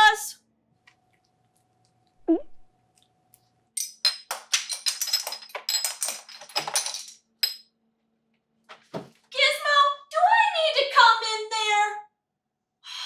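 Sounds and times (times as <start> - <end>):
ringing clinks and rattles: 3.8 - 7.7.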